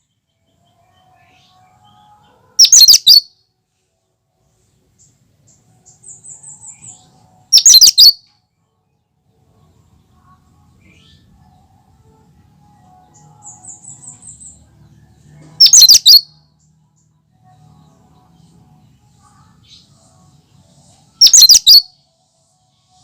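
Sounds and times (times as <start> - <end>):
bird singing and chattering: 2.6 - 3.3, 5.9 - 8.2, 15.6 - 16.3, 21.2 - 21.9.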